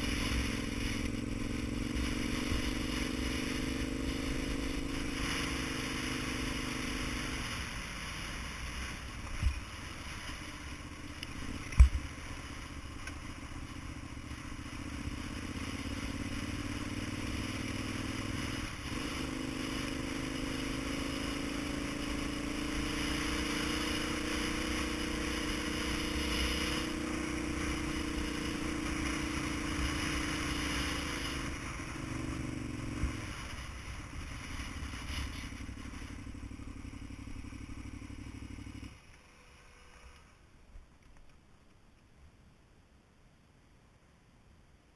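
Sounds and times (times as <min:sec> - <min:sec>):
vehicle engine running: 0:00.0 - 0:40.1.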